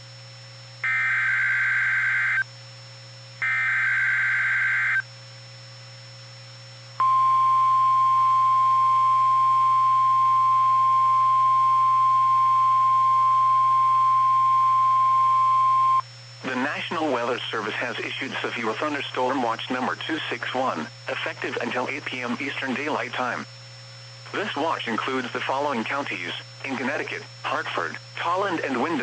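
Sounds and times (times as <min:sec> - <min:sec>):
steady warning alarm tone: 0:00.8 - 0:05.1, 0:06.9 - 0:29.0
buzzy digital data bursts: 0:24.2 - 0:29.0.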